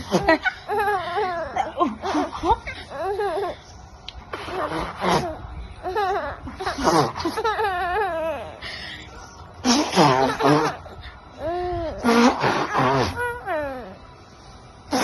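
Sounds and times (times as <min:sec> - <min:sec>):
baby giggling and squealing: 0:04.4 - 0:08.6.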